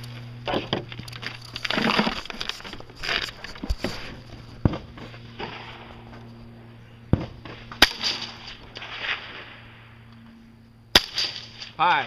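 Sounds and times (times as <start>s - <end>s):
rifle shots: 7.1s - 9.9s, 10.9s - 11.8s.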